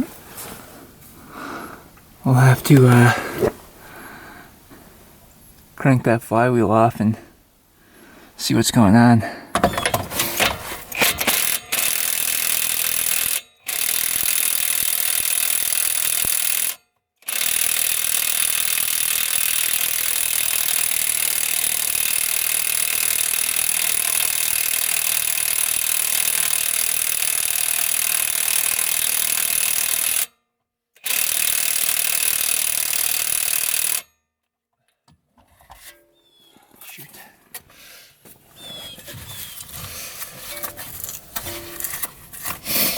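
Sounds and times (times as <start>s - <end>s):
impact wrench hammering: 9.5s - 30.3s.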